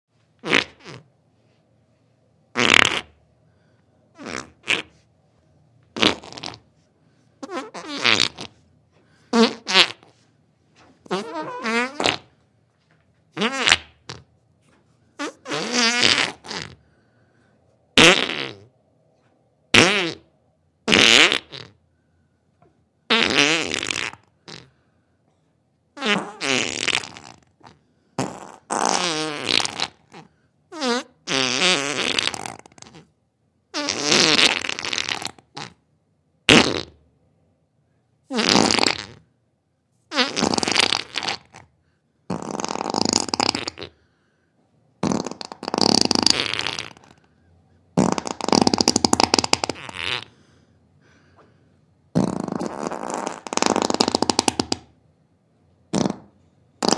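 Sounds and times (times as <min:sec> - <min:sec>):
fart sounds: 0:00.4 - 0:01.2, 0:02.5 - 0:03.2, 0:04.1 - 0:05.1, 0:05.9 - 0:06.8, 0:07.4 - 0:08.6, 0:09.3 - 0:10.2, 0:10.8 - 0:16.9, 0:18.0 - 0:18.8, 0:19.7 - 0:21.8, 0:23.1 - 0:24.8, 0:26.0 - 0:37.0, 0:38.3 - 0:39.4, 0:40.1 - 0:41.7, 0:42.3 - 0:44.0, 0:45.0 - 0:47.3, 0:47.9 - 0:50.4, 0:52.1 - 0:55.0, 0:55.9 - 0:56.9.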